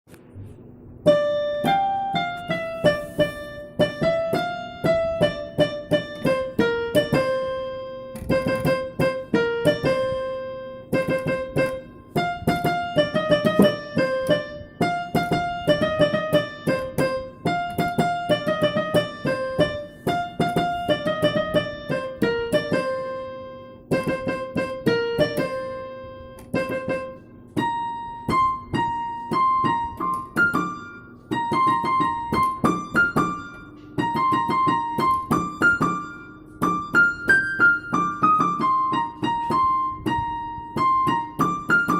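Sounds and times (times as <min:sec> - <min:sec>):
piano melody: 0:00.1 - 0:41.9.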